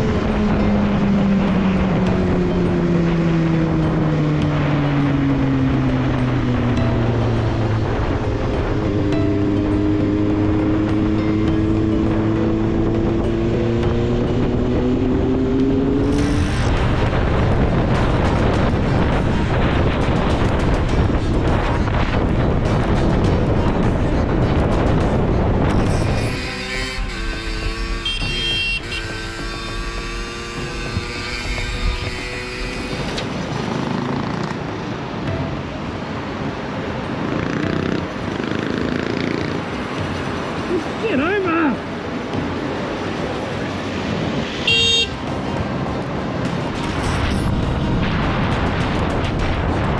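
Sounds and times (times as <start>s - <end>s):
motorcycle engine accelerating: 0.0s - 35.5s, 37.2s - 41.0s
wind rushing over microphone: 0.0s - 49.9s.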